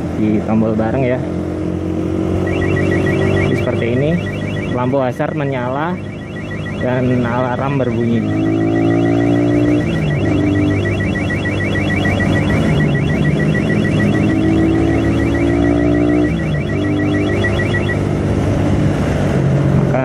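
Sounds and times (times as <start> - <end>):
motorcycle alarm pulsing beep: 2.3 - 18.3.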